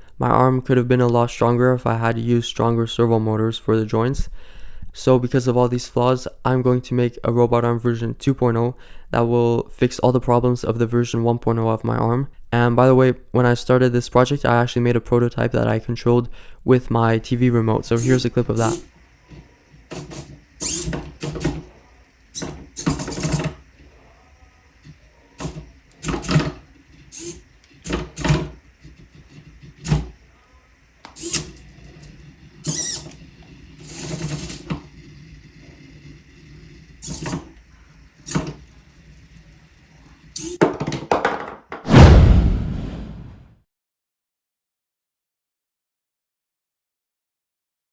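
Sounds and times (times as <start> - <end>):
loud thump: 41.9 - 43.4.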